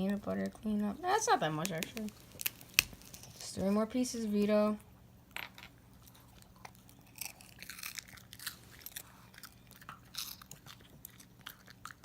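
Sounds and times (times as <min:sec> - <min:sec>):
dog crunching and chewing: 0:00.0 - 0:03.5, 0:05.9 - 0:12.0.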